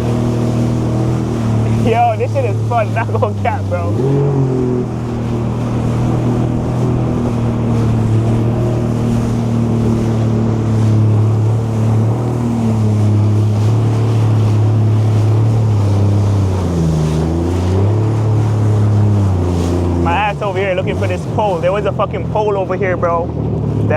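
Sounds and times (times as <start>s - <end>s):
wind on microphone: 0.0s - 22.2s
jet ski engine running: 0.0s - 23.9s
water noise: 0.0s - 23.9s.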